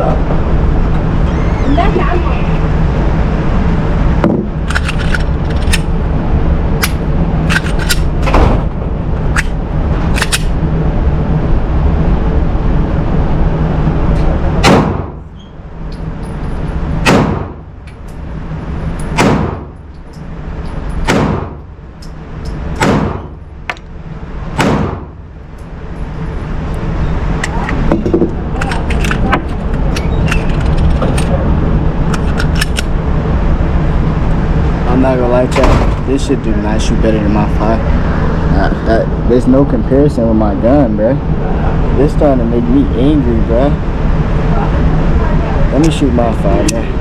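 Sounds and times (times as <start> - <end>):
steady low rumble: 0.0 - 47.0
pistol shots ringing indoors: 14.6 - 15.2, 17.0 - 17.6, 19.1 - 19.7, 21.0 - 21.6, 22.8 - 23.4, 24.6 - 25.1.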